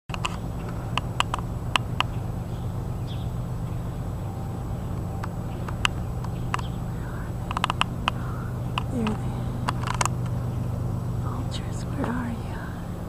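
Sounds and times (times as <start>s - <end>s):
sharp clicks: 0.1s - 2.2s, 5.0s - 10.5s
steady low rumble: 0.1s - 13.0s.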